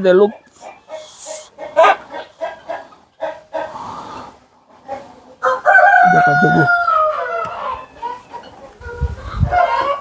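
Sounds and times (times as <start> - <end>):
chickens clucking: 0.0 - 10.0
rooster crowing: 5.4 - 7.9, 9.4 - 10.0.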